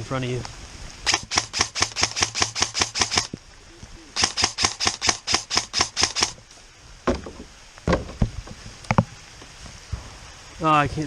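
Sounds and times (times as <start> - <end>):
airsoft rifle rapid fire: 1.0 - 3.3, 4.2 - 6.4.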